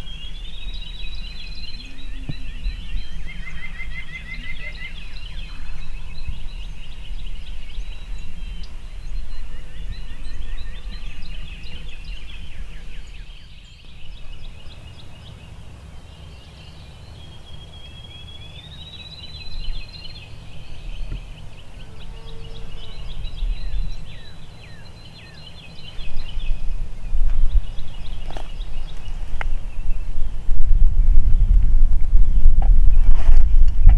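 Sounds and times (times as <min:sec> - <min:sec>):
low rumble: 0:00.0 - 0:16.1
songbirds singing: 0:00.0 - 0:33.9.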